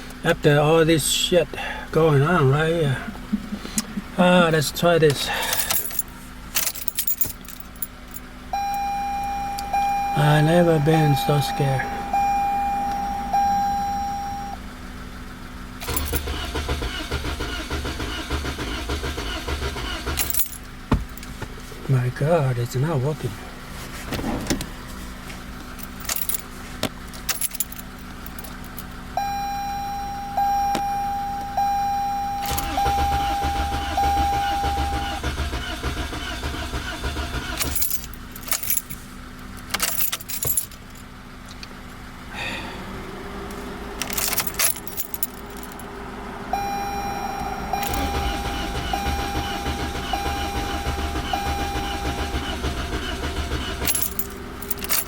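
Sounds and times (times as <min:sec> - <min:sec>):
car engine cranking: 0:00.0 - 0:55.0
clicking and jingling: 0:05.1 - 0:08.3, 0:15.8 - 0:16.4, 0:20.1 - 0:21.5, 0:25.6 - 0:29.3, 0:37.1 - 0:41.7, 0:44.0 - 0:45.9, 0:47.7 - 0:55.0
dashboard warning chime beeping: 0:08.5 - 0:14.6, 0:28.5 - 0:36.4, 0:46.5 - 0:55.0.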